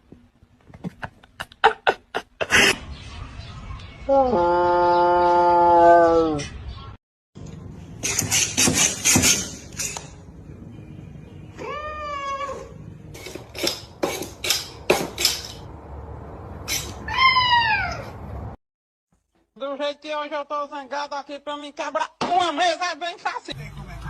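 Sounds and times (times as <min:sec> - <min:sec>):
cat meowing: 0:11.6 - 0:12.8, 0:17.0 - 0:18.2.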